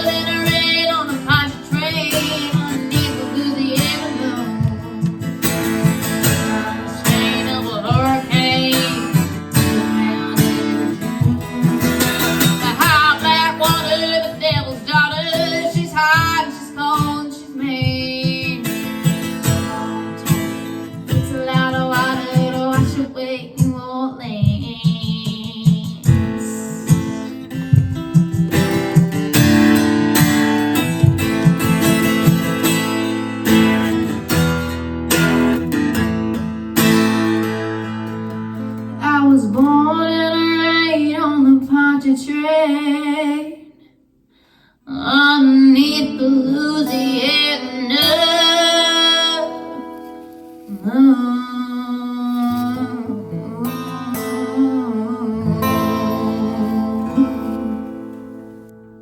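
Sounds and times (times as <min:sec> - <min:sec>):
woman singing with vibrato: 0:00.0 - 0:27.5, 0:38.9 - 0:43.8, 0:44.8 - 0:58.4
acoustic guitar strumming: 0:00.0 - 0:44.3, 0:44.9 - 0:59.0.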